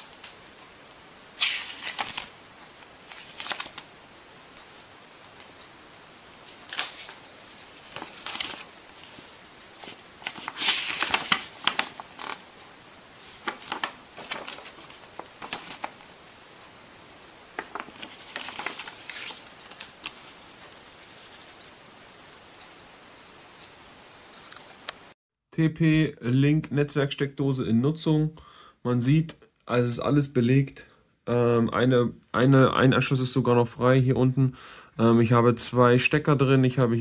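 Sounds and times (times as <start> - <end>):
faint high-pitched whine: 0.0 - 37.0
hands rustling and clicking objects: 13.2 - 16.0, 17.6 - 20.6.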